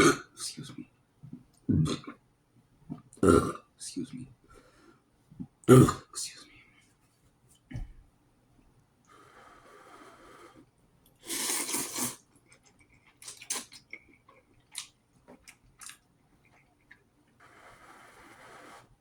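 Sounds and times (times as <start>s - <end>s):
person chewing food: 11.3s - 17.1s.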